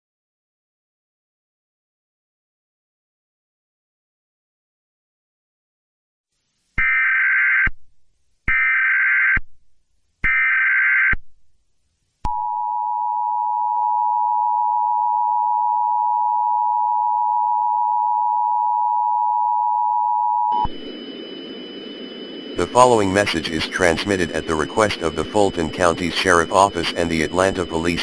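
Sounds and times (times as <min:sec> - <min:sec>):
buzzing data tones: 0:20.5 - 0:28.0.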